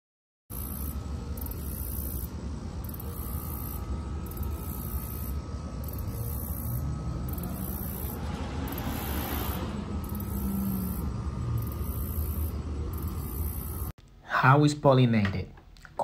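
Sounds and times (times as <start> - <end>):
outdoor rumble and hiss: 0.5 - 16.0
vehicle engine approaching: 3.3 - 13.9.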